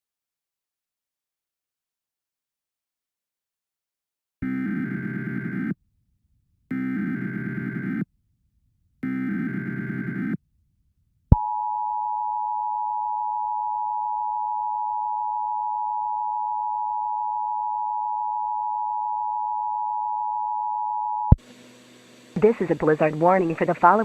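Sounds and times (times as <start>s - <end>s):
buzzy data bursts: 21.4s - 24.0s
faint hiss: 21.4s - 24.0s.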